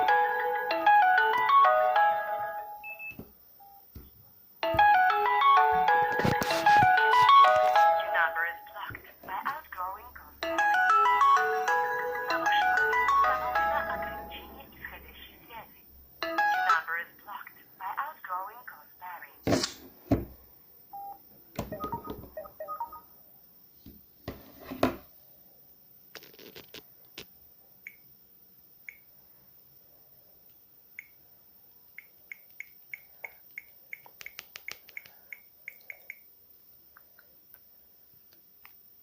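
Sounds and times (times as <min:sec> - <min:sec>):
electronic phone tones: 0:02.8 - 0:03.2, 0:21.0 - 0:23.1
short high beeps: 0:21.0 - 0:23.0.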